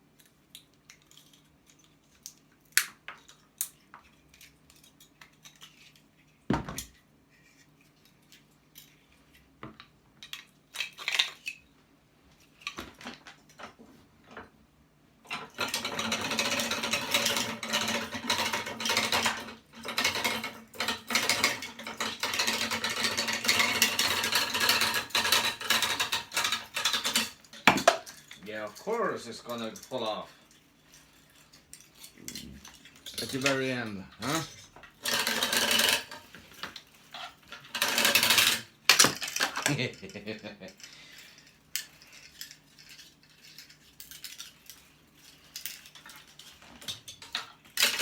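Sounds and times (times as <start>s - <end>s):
metal scraping and rattling: 15.3s - 39.8s.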